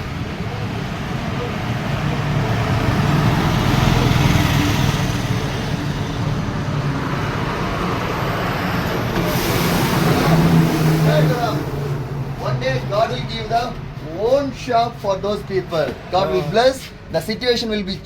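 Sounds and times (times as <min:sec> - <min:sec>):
road traffic hum: 0:00.0 - 0:18.0.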